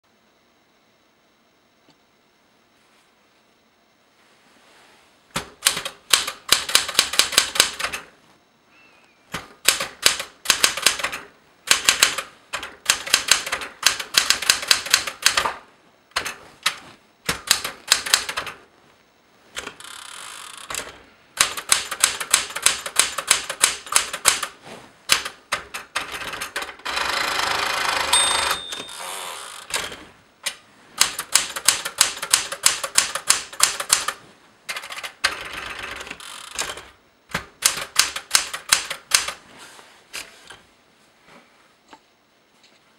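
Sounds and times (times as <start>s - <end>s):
typewriter key strikes: 5.4s - 8.0s, 9.6s - 18.6s, 20.7s - 24.5s, 28.1s - 29.0s, 31.0s - 35.1s, 36.6s - 39.4s
typewriter rattle: 5.4s - 8.1s, 9.4s - 18.6s, 19.6s - 29.0s, 29.6s - 39.4s
typewriter bell ring: 26.9s - 29.1s.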